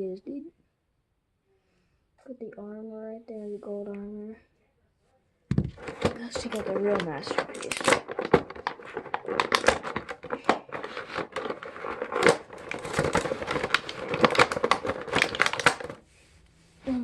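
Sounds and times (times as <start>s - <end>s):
plastic packaging crinkling: 5.5s - 16.0s.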